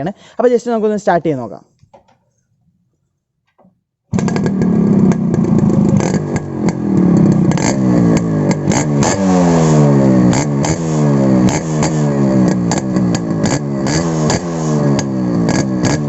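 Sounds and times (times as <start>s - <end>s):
motorcycle engine revving: 4.1s - 16.0s.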